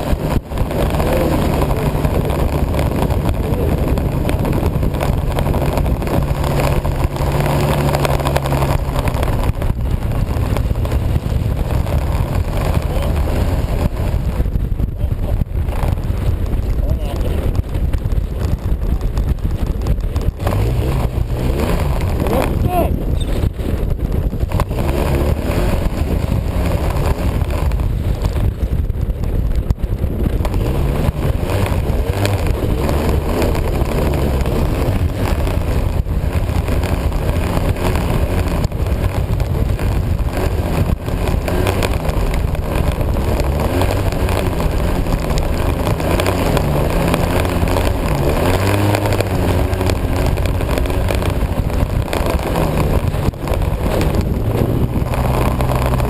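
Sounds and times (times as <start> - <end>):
road noise: 0.0 - 56.0
rushing wind: 0.0 - 56.0
vehicle engine running: 0.0 - 56.0.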